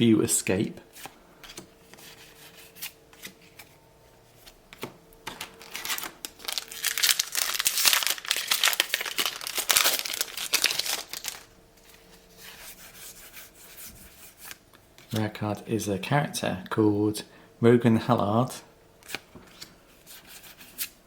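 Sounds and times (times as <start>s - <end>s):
wrapper crinkling and tearing: 5.2s - 11.5s.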